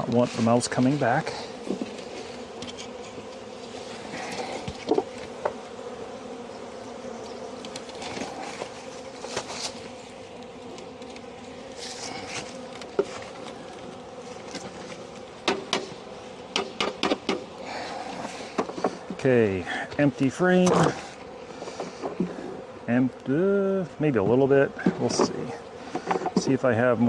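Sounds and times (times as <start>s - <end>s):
honeybees buzzing: 0.0s - 27.0s
hive parts knocking and clicking: 4.3s - 5.6s, 12.4s - 17.5s, 18.2s - 19.2s, 24.2s - 26.6s.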